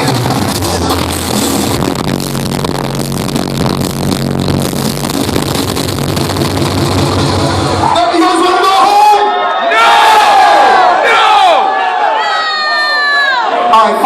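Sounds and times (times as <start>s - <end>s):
electronic dance music with heavy bass: 0.0s - 9.3s.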